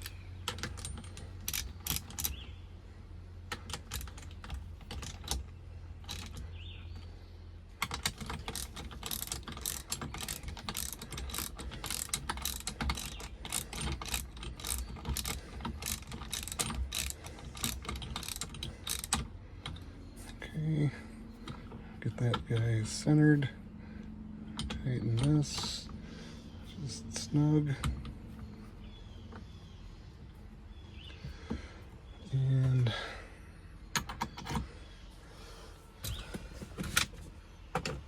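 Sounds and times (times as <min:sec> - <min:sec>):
ratchet wrench clicking: 0:00.0 - 0:02.4, 0:07.8 - 0:19.8.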